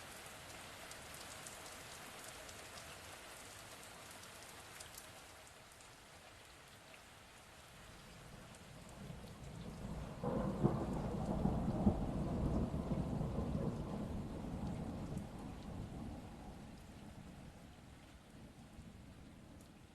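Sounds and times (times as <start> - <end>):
steady rain falling: 0.0 - 19.9
thunder rumbling: 8.7 - 17.8.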